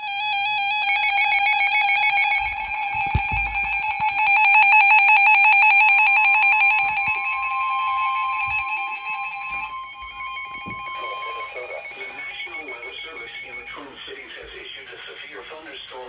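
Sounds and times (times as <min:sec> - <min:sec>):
brief thump: 0:02.4 - 0:04.7.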